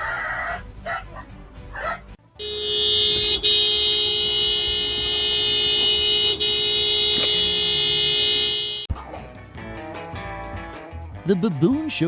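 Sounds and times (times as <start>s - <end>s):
electric horn blare: 2.4s - 8.9s.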